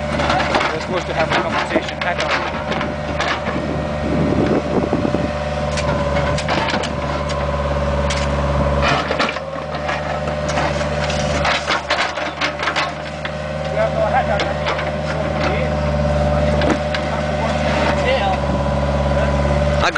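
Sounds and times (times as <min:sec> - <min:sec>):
excavator diesel engine running: 0:00.0 - 0:19.9
asphalt cracking and crunching: 0:08.0 - 0:15.7.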